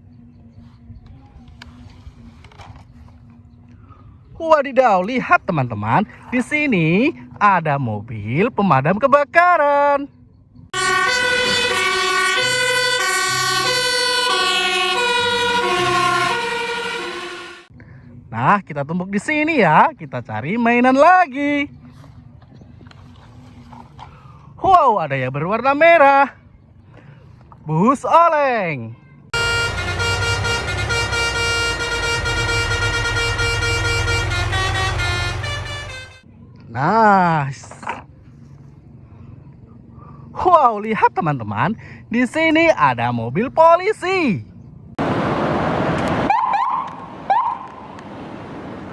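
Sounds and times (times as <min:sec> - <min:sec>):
recorded engine hum: 0:00.0 - 0:28.1, 0:29.0 - 0:48.9
toy electronic siren: 0:10.8 - 0:17.7, 0:29.4 - 0:36.0.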